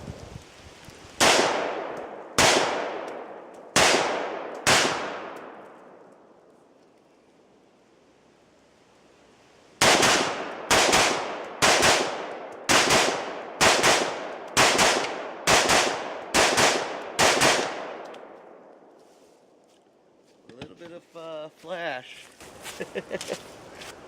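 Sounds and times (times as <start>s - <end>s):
rifle gunshots with echo: 1.2s - 5.6s, 9.8s - 18.4s.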